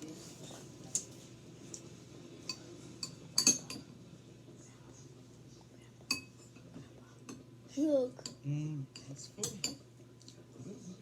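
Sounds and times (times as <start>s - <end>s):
cutlery clinking against dish: 2.4s - 3.9s, 6.1s - 6.7s, 8.2s - 9.9s.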